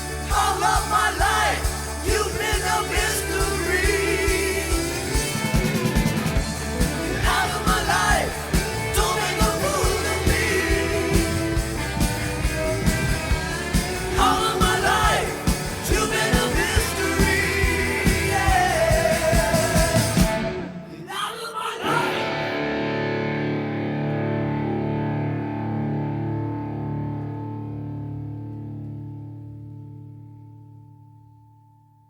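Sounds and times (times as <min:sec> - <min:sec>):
rock song with lead vocal: 0:00.0 - 0:23.4.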